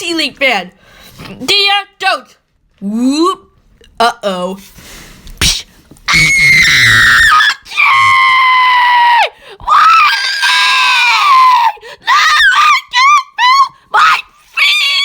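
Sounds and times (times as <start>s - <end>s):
person screaming: 6.1s - 12.6s.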